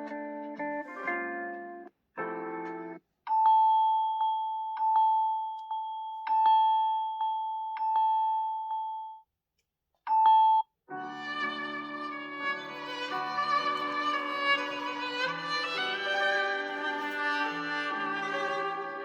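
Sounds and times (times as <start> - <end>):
bell-like ringtone chime: 3.3 - 9.2.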